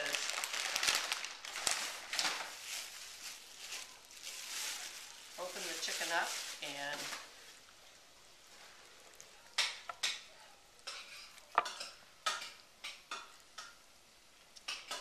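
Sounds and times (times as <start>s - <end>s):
rustling and scraping raw chicken: 0.0s - 10.2s.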